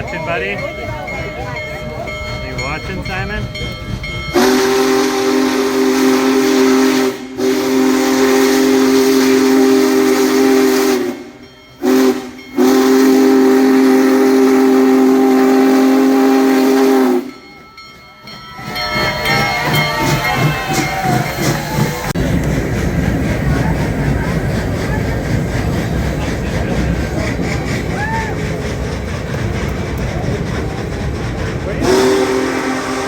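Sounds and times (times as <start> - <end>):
steam locomotive whistle: 4.3 - 17.4, 18.6 - 22.2, 31.8 - 33.0.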